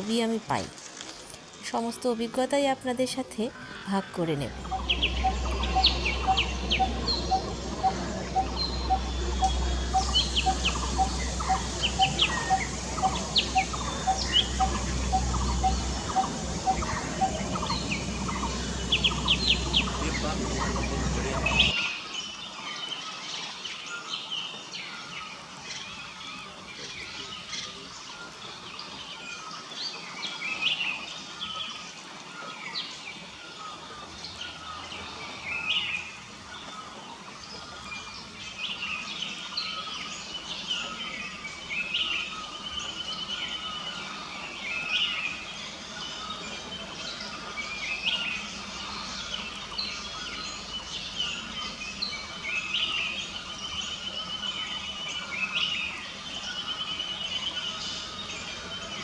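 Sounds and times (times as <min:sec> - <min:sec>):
steady background hiss: 0:00.0 - 0:59.0
birds chirping and calling: 0:03.1 - 0:21.8.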